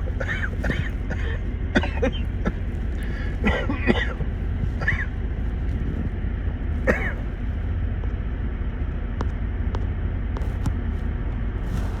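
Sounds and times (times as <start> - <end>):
low rumble: 0.0 - 12.0
man coughing: 0.2 - 2.6, 3.4 - 4.2, 6.8 - 7.2.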